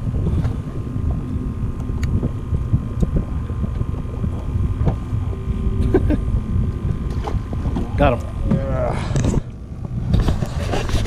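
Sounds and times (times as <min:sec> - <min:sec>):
small boat motor humming: 0:00.0 - 0:11.0
wind rumbling on microphone: 0:00.0 - 0:11.0.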